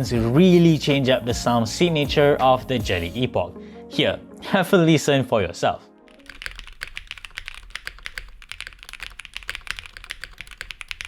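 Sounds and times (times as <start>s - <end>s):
fast mechanical keyboard typing: 6.1s - 11.0s.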